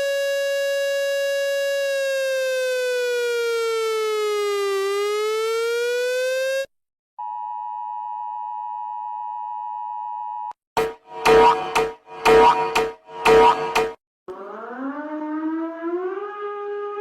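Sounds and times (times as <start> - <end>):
buzzy siren tone: 0.0 - 6.7, 10.8 - 17.0
two-tone alert signal: 10.8 - 14.0
pulsing alarm blasts: 10.8 - 16.5.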